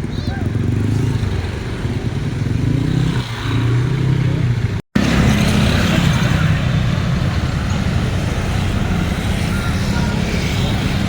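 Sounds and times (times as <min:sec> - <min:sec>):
traffic noise: 0:00.0 - 0:11.0.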